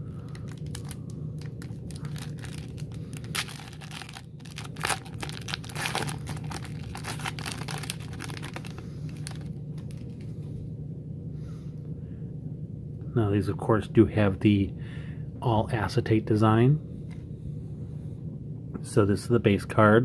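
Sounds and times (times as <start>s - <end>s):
card pack wrapper crinkling and tearing: 0.2s - 10.3s.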